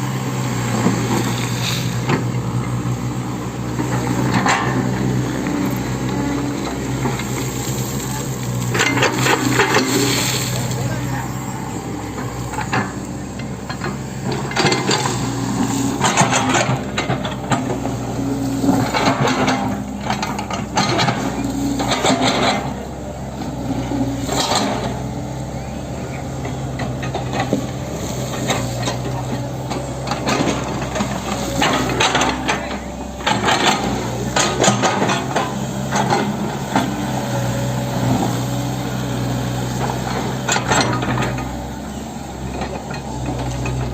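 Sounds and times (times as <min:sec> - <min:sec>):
excavator diesel engine running: 0:00.0 - 0:43.9
metallic clanking and scraping: 0:03.5 - 0:11.5, 0:12.1 - 0:23.5, 0:26.8 - 0:38.4.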